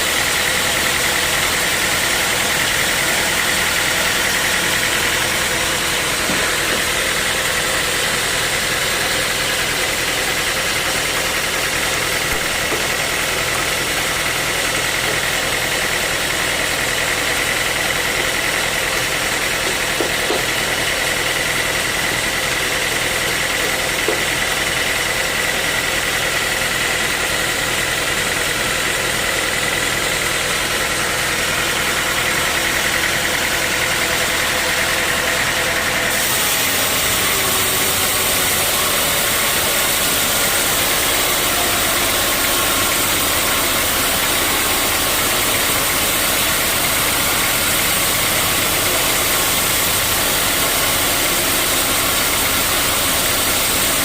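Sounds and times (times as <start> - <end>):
sawmill machinery drone: 0.0 - 54.0
high machine whine: 29.3 - 54.0.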